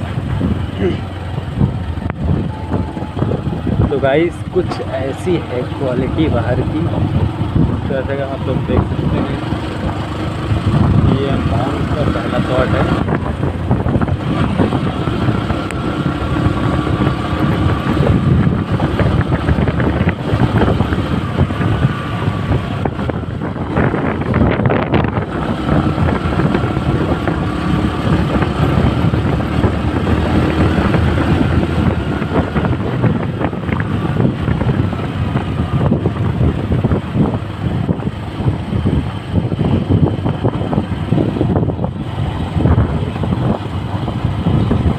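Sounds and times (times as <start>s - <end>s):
motorcycle engine running: 0.0s - 44.9s
wind buffeting microphone: 0.0s - 44.9s.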